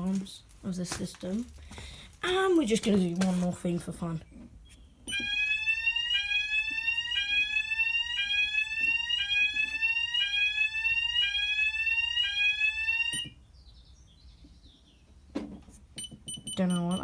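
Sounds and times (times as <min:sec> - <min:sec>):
fire alarm rising sweep tone: 0:05.1 - 0:13.3, 0:16.5 - 0:17.0.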